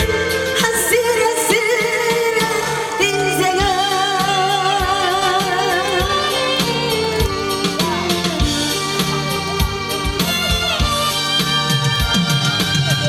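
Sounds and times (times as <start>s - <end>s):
song accompaniment with drum beat: 0.0s - 13.0s
woman singing with vibrato: 0.1s - 8.9s.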